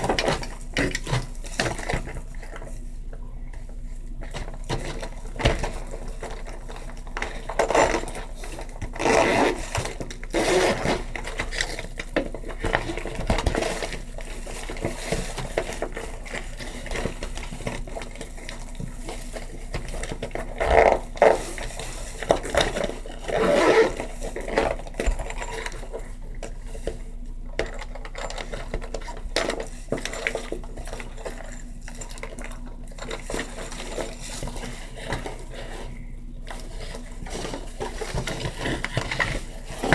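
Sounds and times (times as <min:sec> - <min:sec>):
low steady hum: 0:00.0 - 0:39.9.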